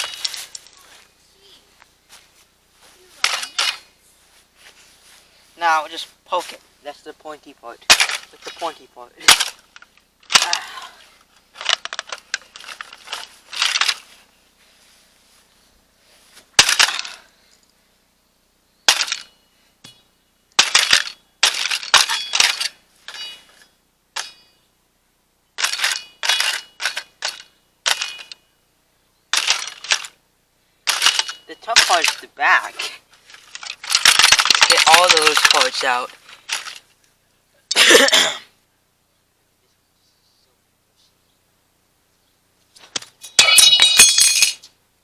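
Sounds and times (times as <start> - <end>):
hand tool smashing plastic toy car: 7.9 - 10.8, 16.6 - 17.2, 18.9 - 19.3, 20.6 - 23.3, 25.6 - 28.4, 30.9 - 32.2, 32.8 - 36.8.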